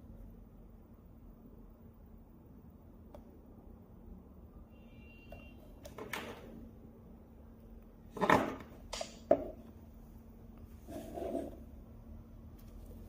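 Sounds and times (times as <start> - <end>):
faint steady hum: 0.0 - 13.0
objects knocking and scraping: 8.1 - 9.6, 10.8 - 11.7.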